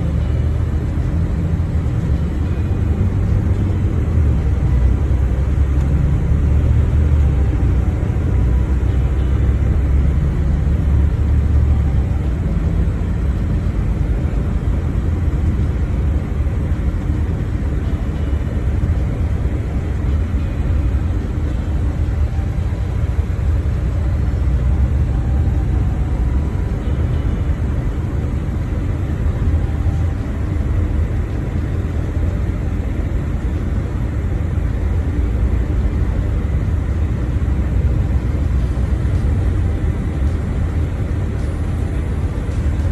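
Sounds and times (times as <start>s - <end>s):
vehicle interior engine and road noise: 0.0s - 42.9s.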